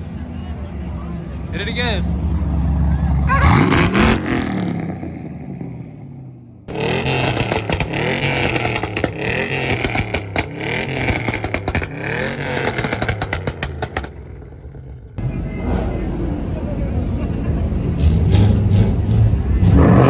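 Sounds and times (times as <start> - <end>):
car engine revving: 0.0 - 20.0
exhaust crackles and pops: 6.7 - 15.2.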